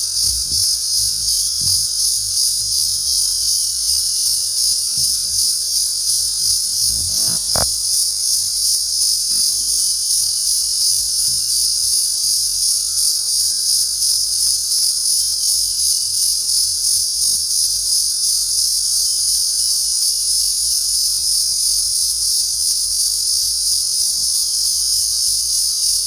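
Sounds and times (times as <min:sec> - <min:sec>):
insects shrilling: 0:00.0 - 0:07.7.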